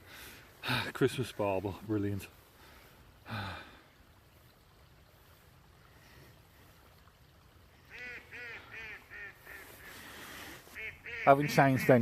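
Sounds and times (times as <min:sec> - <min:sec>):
faint riverside background: 0:00.0 - 0:12.0
geese honking: 0:07.9 - 0:12.0.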